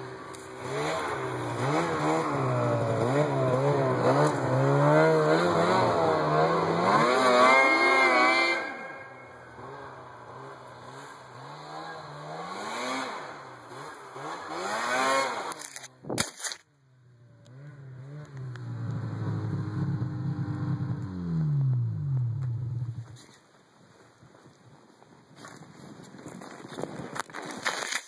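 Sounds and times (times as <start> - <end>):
snowmobile engine revving: 0.0 - 15.9, 17.2 - 23.3.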